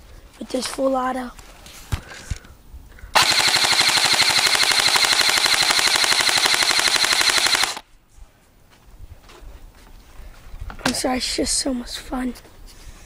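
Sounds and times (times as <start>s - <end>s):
airsoft gun rapid fire: 3.2s - 7.8s.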